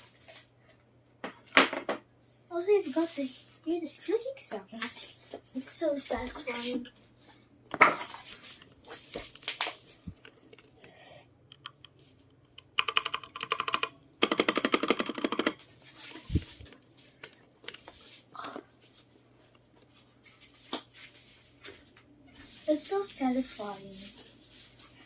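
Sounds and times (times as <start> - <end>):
mechanical keyboard clicking: 12.5 - 15.6.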